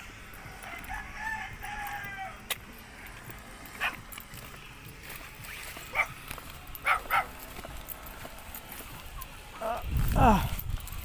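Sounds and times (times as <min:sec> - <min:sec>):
dog barking: 0:05.9 - 0:06.1, 0:06.8 - 0:07.3.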